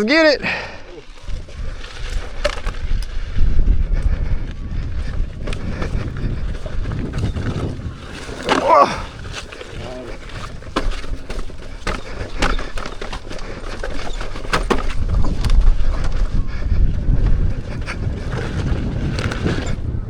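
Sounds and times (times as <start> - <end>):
wind rumbling on microphone: 0.0 - 20.0
tyre clicks and knocks on rocks: 5.1 - 16.3.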